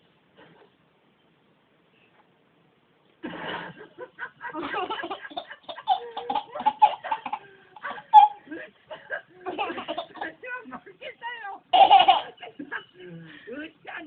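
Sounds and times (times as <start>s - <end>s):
hearty laughter: 3.2s - 10.3s.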